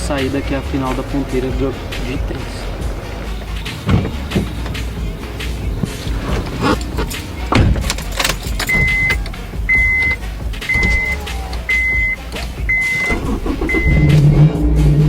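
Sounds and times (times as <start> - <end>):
car warning chime beeping: 0.0 - 14.2
car engine starting: 0.0 - 15.0
keys rattling: 2.7 - 14.1
clicks and knocks: 5.8 - 13.0.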